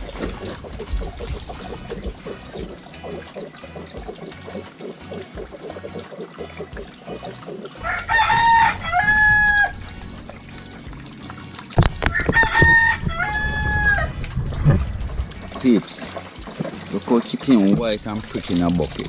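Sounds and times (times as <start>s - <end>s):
rooster crowing: 7.8s - 9.8s, 12.1s - 14.2s.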